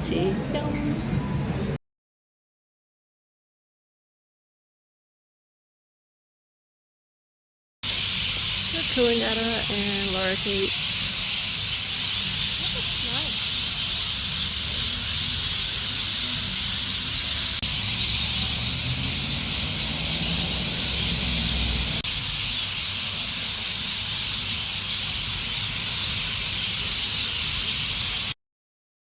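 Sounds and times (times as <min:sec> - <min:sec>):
flock of lorikeets screeching: 0:07.9 - 0:28.4.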